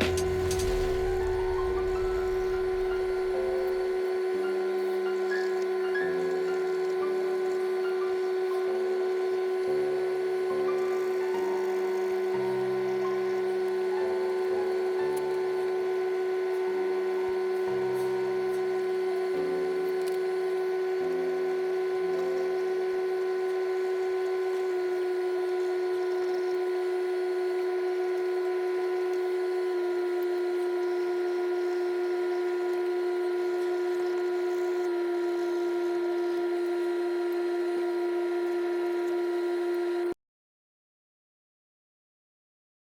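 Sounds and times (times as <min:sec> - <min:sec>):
electronic drone tone: 0:00.0 - 0:19.8.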